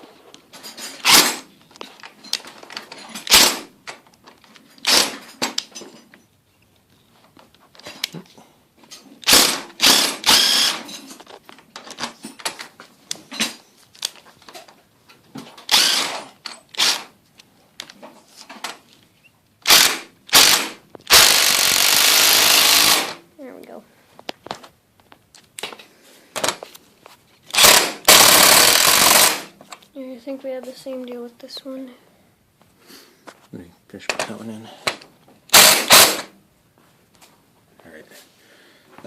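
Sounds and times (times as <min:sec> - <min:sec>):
power drill driving screws: 0:00.9 - 0:01.5, 0:03.2 - 0:03.7, 0:04.8 - 0:05.3, 0:09.2 - 0:10.9, 0:15.6 - 0:17.1, 0:19.6 - 0:23.2, 0:27.5 - 0:29.5, 0:35.5 - 0:36.3.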